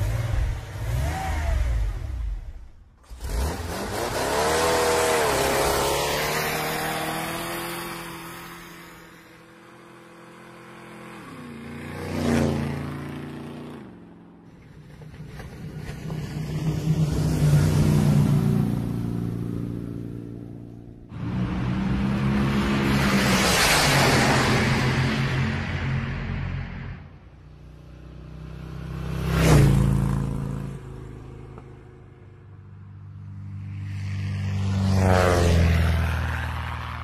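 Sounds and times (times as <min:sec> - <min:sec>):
car engine revving: 0:00.0 - 0:09.2
vehicle passing by: 0:03.2 - 0:14.0, 0:14.6 - 0:31.4, 0:32.6 - 0:37.0.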